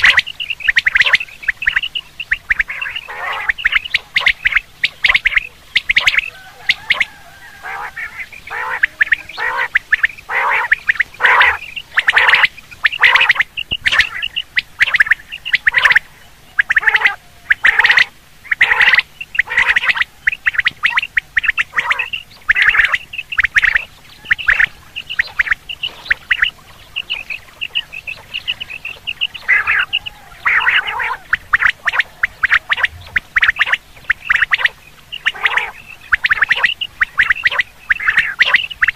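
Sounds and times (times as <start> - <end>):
quail calling: 0.0 - 38.9.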